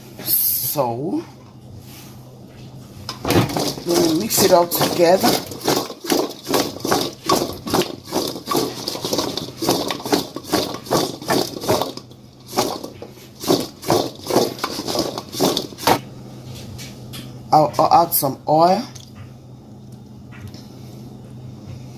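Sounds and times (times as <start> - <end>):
potato pieces tossed in a bowl: 3.1 - 16.0.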